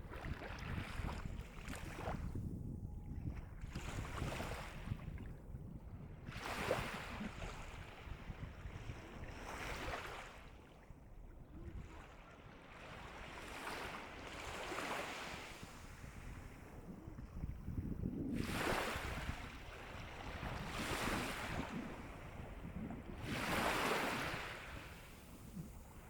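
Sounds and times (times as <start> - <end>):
sea waves washing in: 18.3 - 26.0.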